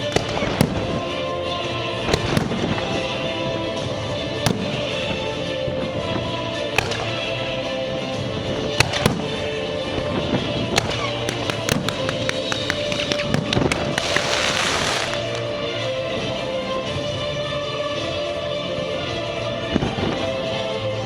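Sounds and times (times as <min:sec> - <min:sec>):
fireworks bangs and crackling: 0:00.0 - 0:01.2, 0:02.0 - 0:05.3, 0:06.8 - 0:07.3, 0:08.8 - 0:09.6, 0:10.7 - 0:15.6
background music: 0:00.0 - 0:21.0.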